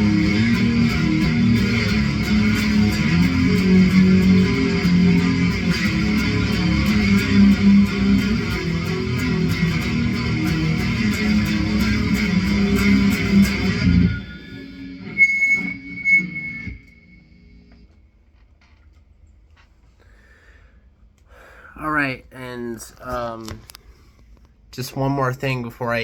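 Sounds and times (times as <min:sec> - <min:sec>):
distorted electric guitar chords: 0:00.0 - 0:18.0
thin high tone: 0:13.6 - 0:17.8.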